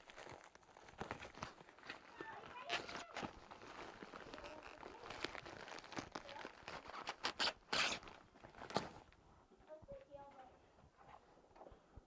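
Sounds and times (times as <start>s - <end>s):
packaging tape tearing: 2.4s - 8.9s.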